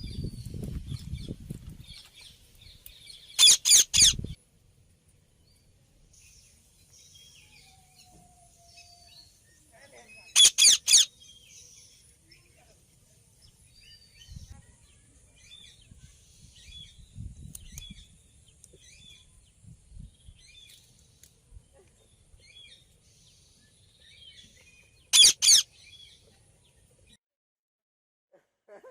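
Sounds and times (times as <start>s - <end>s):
parakeet chirping: 3.2s - 4.4s, 10.3s - 11.1s, 25.1s - 25.7s
loud high parakeet calls: 3.3s - 4.4s, 10.3s - 11.1s, 25.1s - 25.7s.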